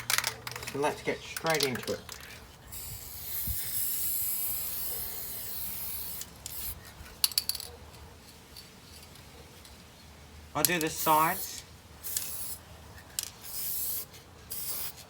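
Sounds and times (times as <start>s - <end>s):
aerosol spray can hissing: 2.7s - 6.8s, 13.5s - 15.0s.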